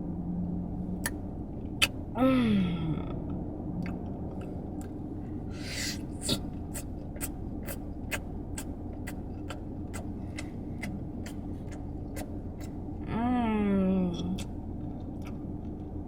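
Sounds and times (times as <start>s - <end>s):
steady low hum: 0.0s - 16.0s
regular ticking clicks: 6.7s - 12.8s.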